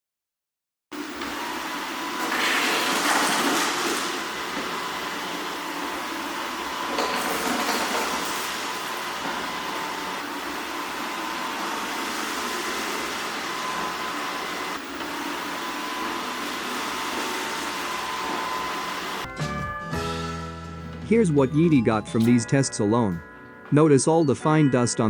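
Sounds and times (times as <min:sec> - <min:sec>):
robot vacuum running: 0:01.0 - 0:19.3.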